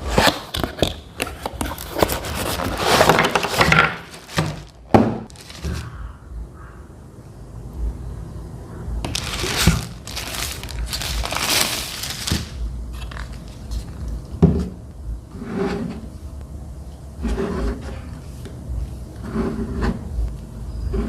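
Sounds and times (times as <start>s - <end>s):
packaging rustling and crinkling: 0.0s - 6.0s, 9.0s - 14.1s.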